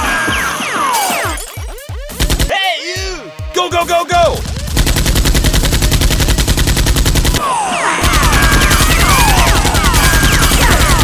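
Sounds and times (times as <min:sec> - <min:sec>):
rapid automatic gunfire: 0:04.6 - 0:07.4, 0:08.0 - 0:11.0.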